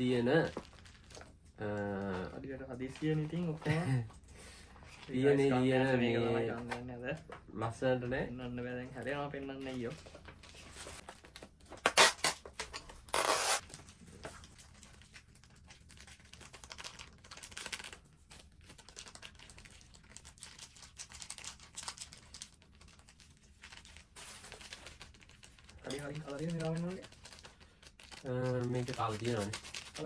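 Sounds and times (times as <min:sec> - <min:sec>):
plastic packaging crinkling: 0:00.0 - 0:04.1, 0:13.0 - 0:30.0
plastic packaging ripping: 0:11.1 - 0:12.5, 0:13.1 - 0:13.8, 0:15.9 - 0:18.0, 0:18.6 - 0:30.0.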